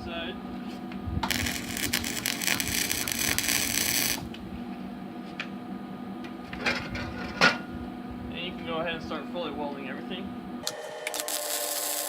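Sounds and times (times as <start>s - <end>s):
steady low hum: 0.0s - 12.0s
welding arc crackling: 1.2s - 4.4s, 10.6s - 12.0s.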